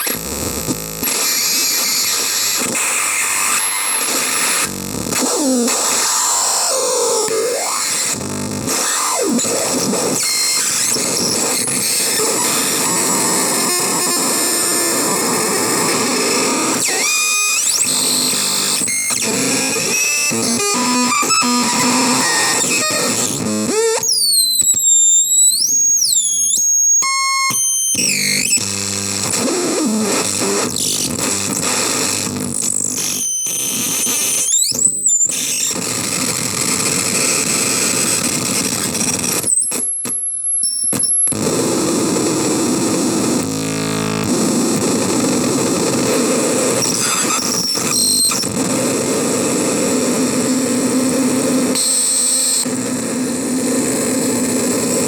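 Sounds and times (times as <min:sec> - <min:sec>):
harsh distorted synth noise: 0:18.0 - 0:23.9.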